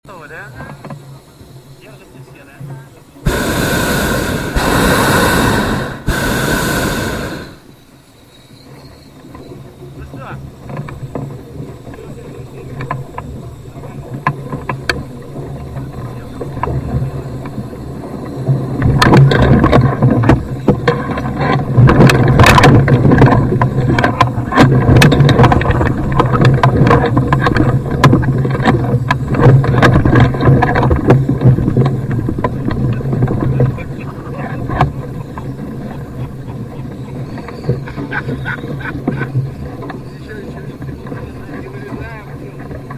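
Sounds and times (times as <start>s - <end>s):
wind rumbling on microphone: 3.2s - 7.8s, 9.0s - 42.9s
balloon basket dragging on ground: 3.3s - 7.7s.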